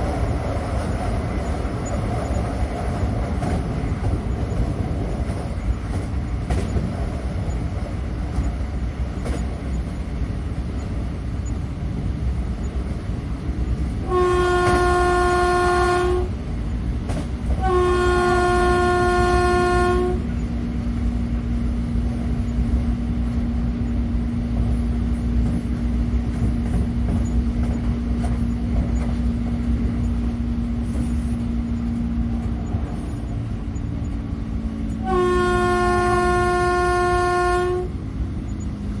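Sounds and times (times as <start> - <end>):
train rumbling: 0.0 - 39.0
train horn blasts: 14.0 - 16.4, 17.6 - 20.4, 34.9 - 38.0.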